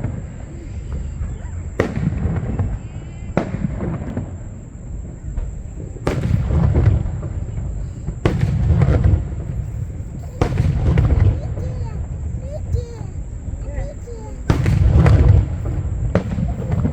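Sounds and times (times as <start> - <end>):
fireworks booming: 0.0 - 16.9.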